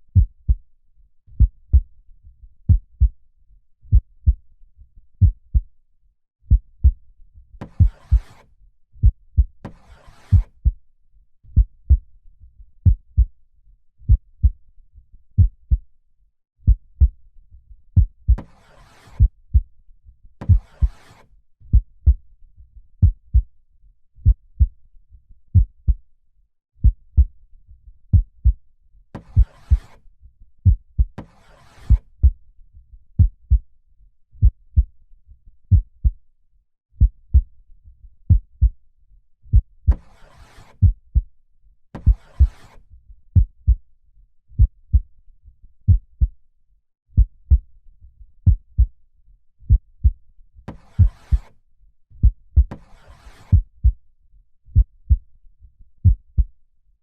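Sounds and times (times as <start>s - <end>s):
heartbeat thumps: 5.2s - 5.6s, 7.7s - 8.2s, 11.6s - 12.0s, 15.4s - 15.8s, 21.7s - 22.2s, 23.0s - 23.4s, 29.3s - 29.9s, 33.2s - 33.6s, 37.0s - 37.5s, 40.8s - 41.2s, 44.6s - 45.0s, 45.9s - 46.3s, 47.2s - 47.6s, 48.4s - 48.9s, 49.7s - 50.2s, 52.2s - 52.8s, 54.8s - 55.2s.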